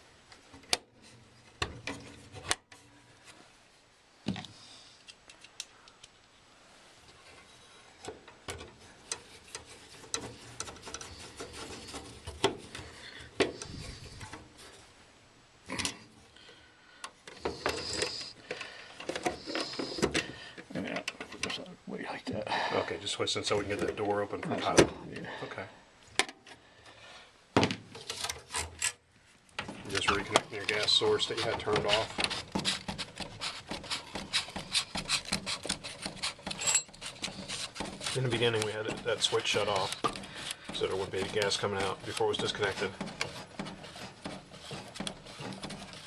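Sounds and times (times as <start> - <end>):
metal scraping on metal: 9.1 - 14.4, 17.3 - 18.4, 19.1 - 20.1, 29.9 - 46.0
metal parts clicking and rattling: 29.6 - 46.0.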